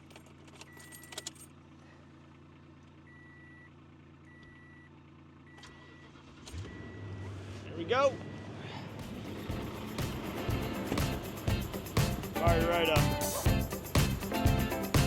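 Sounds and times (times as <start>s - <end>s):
keys jingling: 0.0s - 1.6s
pickup truck idling: 0.0s - 15.0s.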